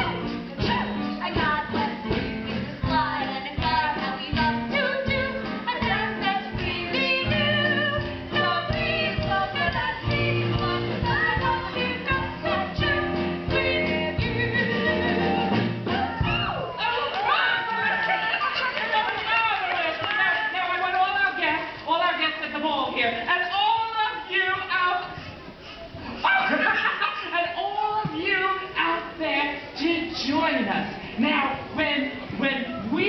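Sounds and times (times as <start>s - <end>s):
voices singing: 0.0s - 16.5s
instrumental accompaniment with beat: 0.0s - 16.7s.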